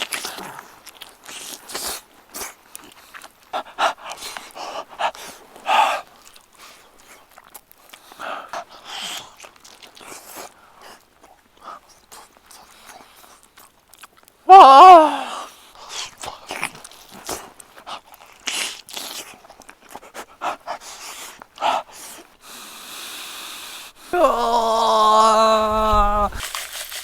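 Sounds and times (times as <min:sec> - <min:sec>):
person chewing steak: 0:00.0 - 0:14.4, 0:15.7 - 0:22.4
loud voiced exclamation: 0:14.5 - 0:15.4, 0:24.1 - 0:26.4.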